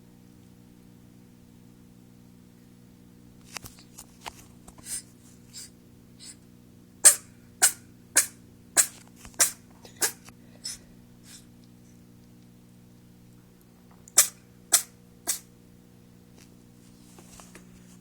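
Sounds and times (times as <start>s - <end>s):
kitten sneezing: 4.8s - 6.4s, 7.0s - 11.5s, 14.2s - 15.5s.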